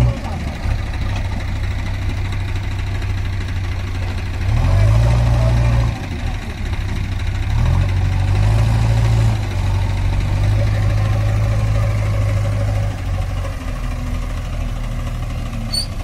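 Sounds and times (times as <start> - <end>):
heavy diesel engine running: 0.0 - 16.0.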